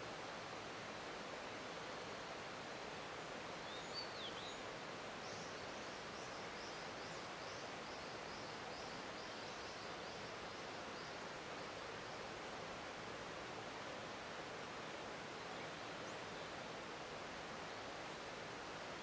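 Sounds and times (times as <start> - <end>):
bird singing whistled notes: 3.6 - 4.6.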